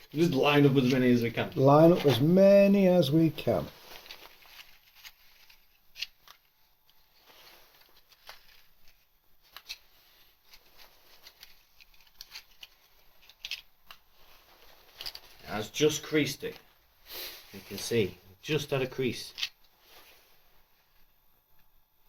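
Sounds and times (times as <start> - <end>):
matchboxes clicking and rustling: 4.0 - 7.0, 7.8 - 14.2, 19.2 - 19.7.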